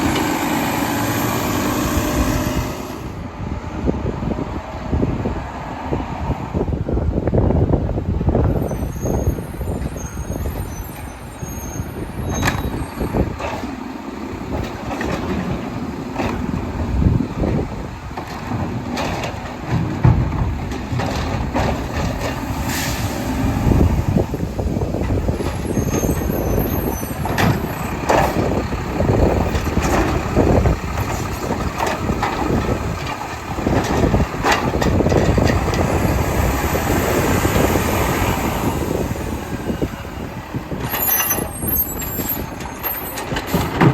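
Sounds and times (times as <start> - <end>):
diesel engine running: 0.0 - 3.3, 11.3 - 43.9
knocks and clunks: 12.2 - 38.6, 40.7 - 43.9
air brake hiss: 22.6 - 23.4.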